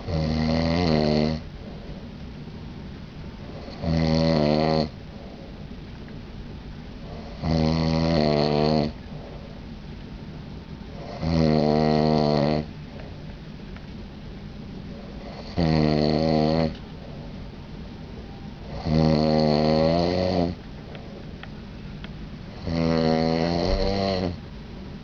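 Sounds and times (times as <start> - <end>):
man snoring: 0.0 - 1.5, 3.6 - 5.0, 7.2 - 9.0, 11.0 - 12.7, 15.2 - 16.8, 18.7 - 20.6, 22.5 - 24.4
quiet breathing: 1.4 - 2.4, 4.9 - 7.4, 8.9 - 11.2, 12.6 - 13.5, 14.8 - 15.4, 16.7 - 18.8, 20.5 - 22.7.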